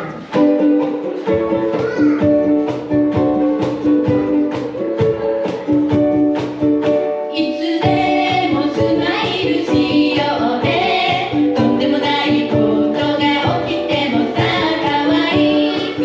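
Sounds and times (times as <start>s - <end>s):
ukuleles strummed: 0.0s - 16.0s
voices singing pop melody: 7.4s - 16.0s.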